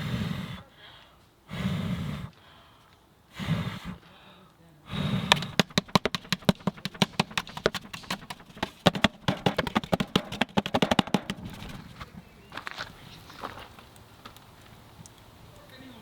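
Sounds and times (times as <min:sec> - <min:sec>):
campfire crackling and popping: 0:13.2 - 0:15.8.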